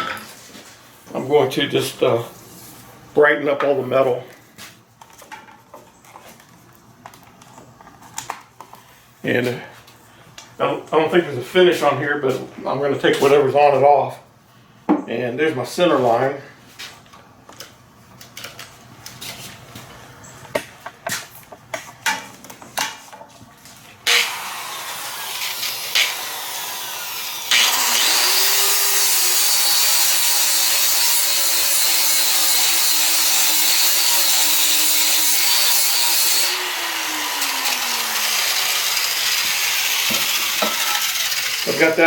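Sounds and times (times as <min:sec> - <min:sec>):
power grinder grinding steel: 0:24.1 - 0:42.0.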